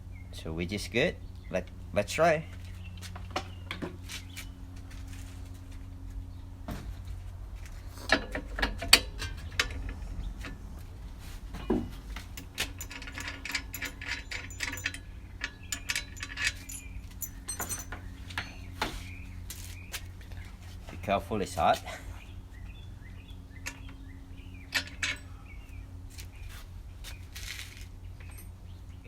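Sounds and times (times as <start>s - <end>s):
low steady hum: 0.0s - 29.0s
small metal parts clicking: 11.6s - 18.6s.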